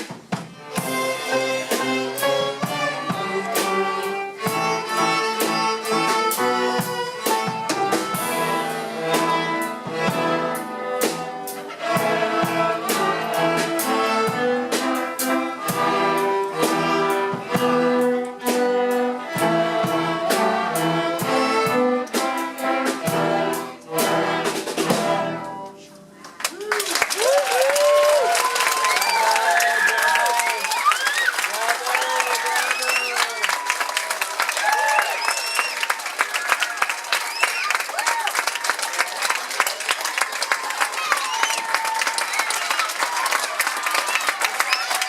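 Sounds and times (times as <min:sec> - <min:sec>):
steady drum beat: 0:00.0 - 0:25.4
string ensemble playing: 0:00.0 - 0:26.2.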